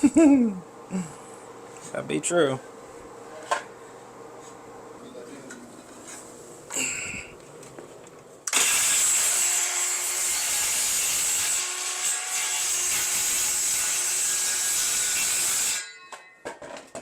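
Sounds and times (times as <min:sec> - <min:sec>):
power saw cutting flooring: 0:08.5 - 0:15.9.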